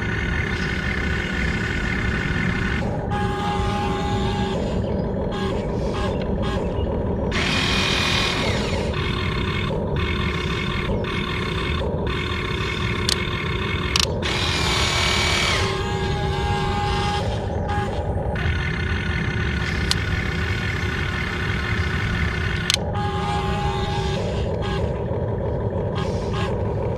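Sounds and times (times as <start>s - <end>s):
small electric motors whining: 0.0s - 26.9s
sharp clicks: 9.4s - 14.8s, 19.5s - 20.2s, 22.4s - 22.9s.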